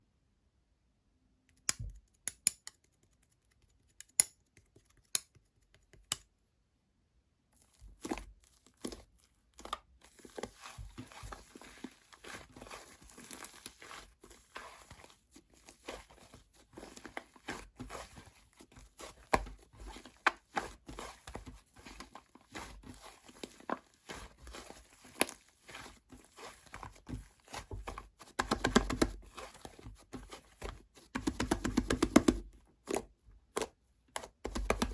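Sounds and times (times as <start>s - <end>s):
clay slime crackling and popping: 7.6s - 34.9s.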